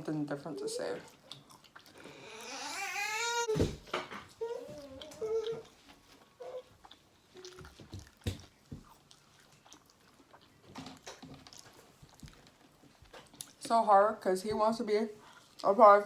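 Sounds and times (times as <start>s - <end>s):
chewing and biting food: 0.6s - 3.3s, 4.4s - 13.7s.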